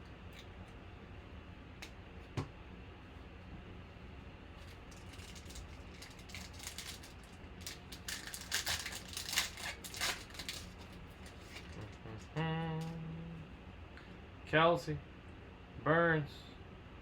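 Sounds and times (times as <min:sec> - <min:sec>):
card wrapper crinkling: 0:04.6 - 0:12.0.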